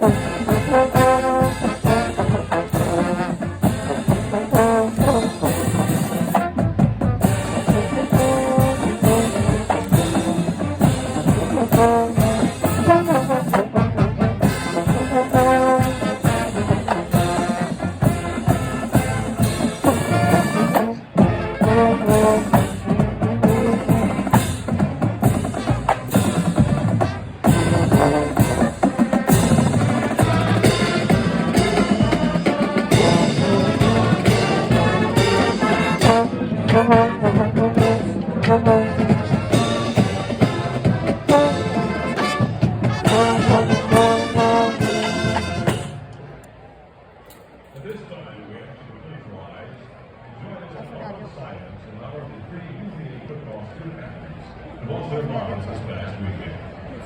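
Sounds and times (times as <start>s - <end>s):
brass trumpets playing: 0.0s - 46.1s
drumline with bass drums: 0.0s - 46.4s.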